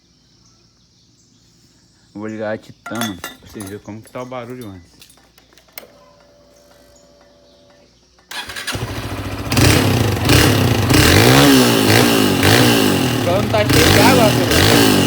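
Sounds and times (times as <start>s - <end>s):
motorcycle engine revving: 5.7s - 15.0s.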